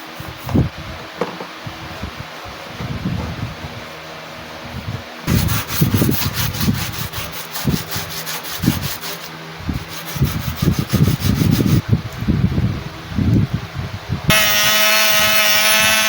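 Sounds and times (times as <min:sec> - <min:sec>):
sanding a steel knife blade: 0:05.3 - 0:11.8.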